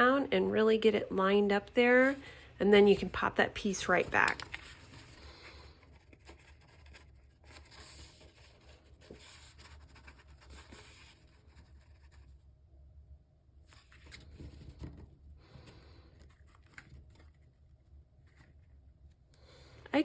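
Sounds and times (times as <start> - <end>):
cardstock rubbing and rustling: 2.9 - 12.3.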